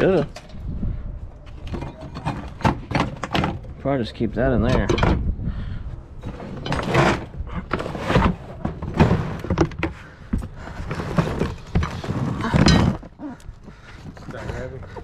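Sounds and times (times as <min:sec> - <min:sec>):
scrap steel thunking and clanking: 0:01.4 - 0:03.8.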